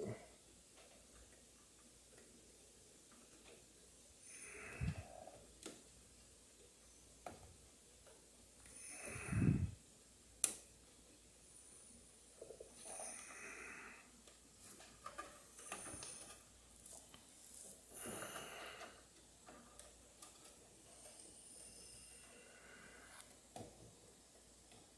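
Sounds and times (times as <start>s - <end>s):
person breathing heavily: 4.3s - 5.3s, 8.8s - 9.8s, 17.9s - 19.1s, 21.3s - 23.3s.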